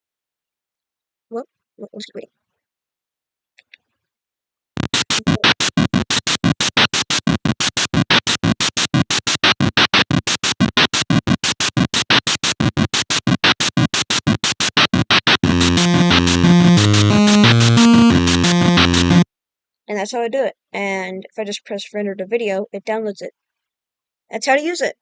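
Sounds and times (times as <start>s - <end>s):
stuttering chiptune music: 4.8s - 19.2s.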